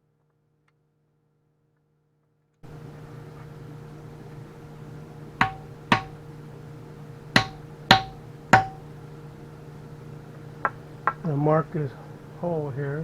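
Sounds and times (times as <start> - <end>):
steady low hum: 2.6 - 13.0
sharp metallic taps: 5.4 - 6.2, 7.4 - 8.9.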